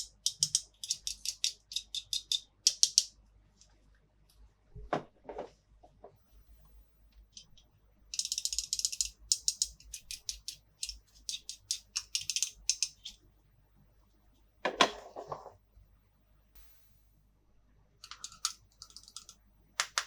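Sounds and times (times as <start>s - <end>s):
ratchet-like plastic clicks: 0.0s - 3.1s, 7.3s - 13.2s, 18.0s - 20.0s.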